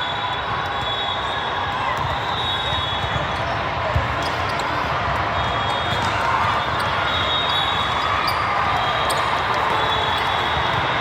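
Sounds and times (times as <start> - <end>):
spectators chattering: 0.0 - 11.0
sneakers squeaking: 1.9 - 11.0
basketball bouncing on court: 3.0 - 4.7.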